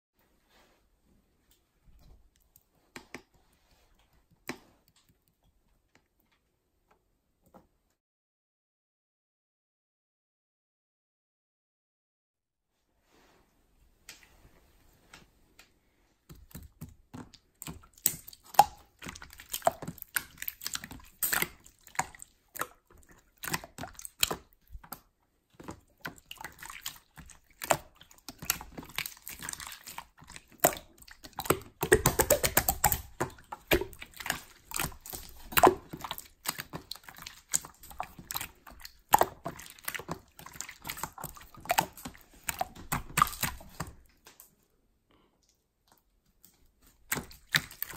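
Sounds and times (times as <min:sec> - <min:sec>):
slime clicking and popping: 0:16.3 - 0:22.8, 0:26.1 - 0:44.0.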